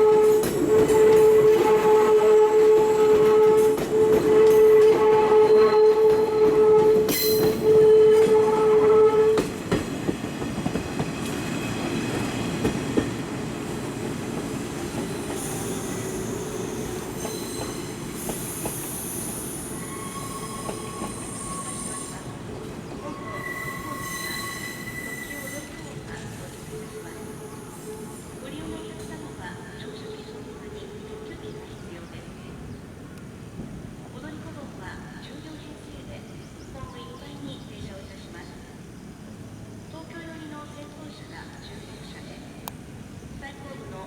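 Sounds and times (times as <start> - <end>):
train wheels rolling: 9.3 - 29.4
high-pitched wheel squeal: 15.4 - 22.2, 23.1 - 25.8.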